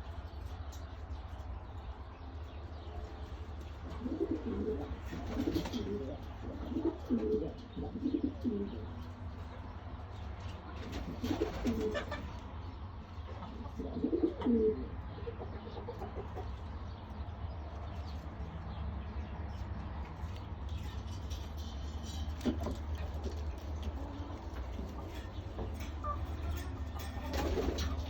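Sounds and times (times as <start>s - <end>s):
pigeons cooing: 3.1s - 9.6s, 10.8s - 12.4s, 13.3s - 16.6s, 21.2s - 28.0s.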